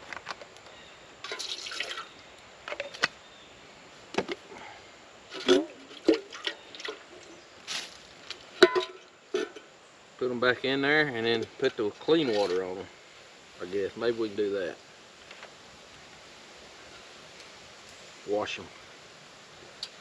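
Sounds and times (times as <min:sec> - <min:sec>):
water dripping: 0:01.2 - 0:02.2, 0:05.3 - 0:07.3
water pouring and splashing: 0:01.2 - 0:02.2, 0:05.3 - 0:09.6, 0:12.0 - 0:12.8.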